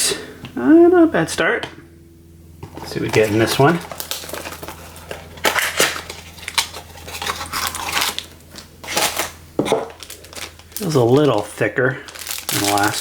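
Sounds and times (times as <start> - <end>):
wrapper crinkling: 2.8 - 13.0.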